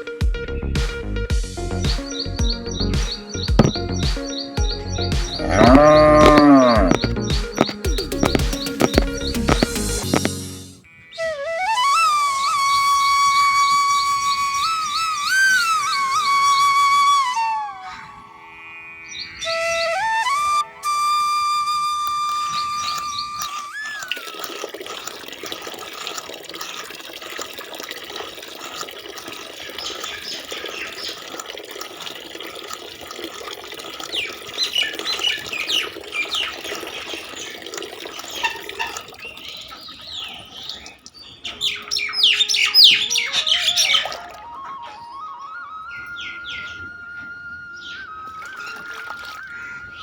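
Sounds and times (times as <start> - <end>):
running water: 1.8 - 50.0
birds chirping and squawking: 1.9 - 11.6, 14.2 - 20.1, 22.4 - 24.4, 29.4 - 31.4, 34.0 - 50.0
held flute note: 5.3 - 18.6, 19.4 - 24.6, 43.3 - 50.0.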